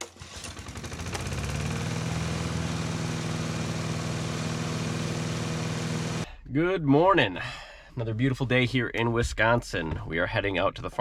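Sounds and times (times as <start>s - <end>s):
engine running steadily: 0.2s - 6.3s.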